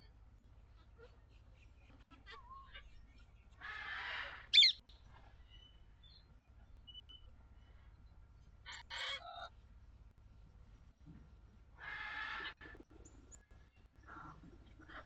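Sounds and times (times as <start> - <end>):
birds chirping: 2.8 - 9.6.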